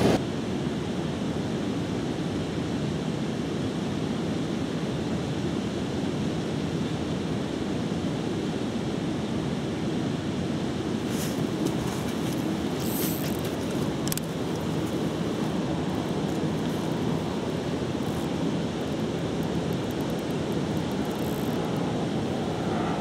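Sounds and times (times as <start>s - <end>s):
river water rushing: 10.8s - 22.5s
faint clicks: 18.0s - 21.9s.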